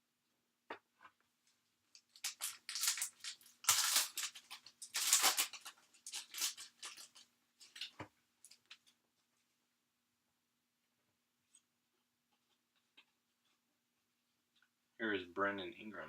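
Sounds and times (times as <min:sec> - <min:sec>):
foil wrapper crinkling and tearing: 0:01.9 - 0:09.0.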